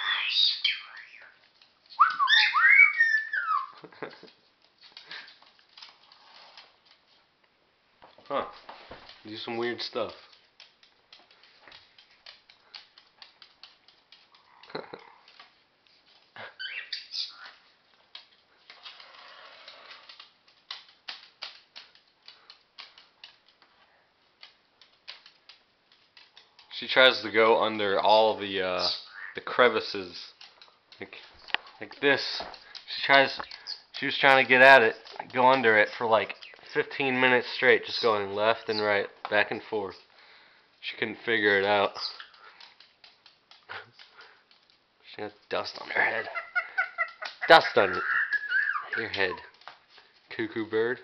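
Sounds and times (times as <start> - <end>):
parrot whistled calls: 0.0 - 1.3, 1.9 - 3.8, 47.6 - 49.2
parrot feet tapping hard surface: 0.1 - 50.8
faint rustle: 3.8 - 51.0.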